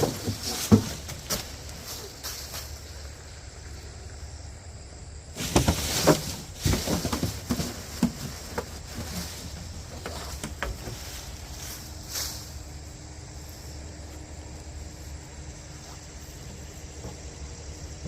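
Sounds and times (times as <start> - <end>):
dry branches rustling and snapping: 0.0 - 3.1, 5.4 - 12.8
steady low hum: 0.0 - 18.0.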